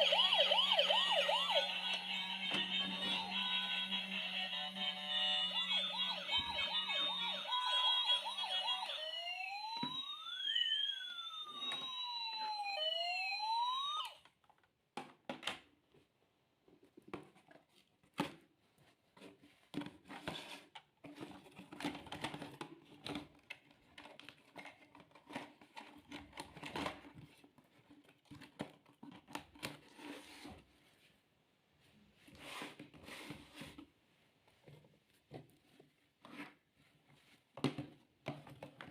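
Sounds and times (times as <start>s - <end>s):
toy siren wailing: 0.0s - 14.2s.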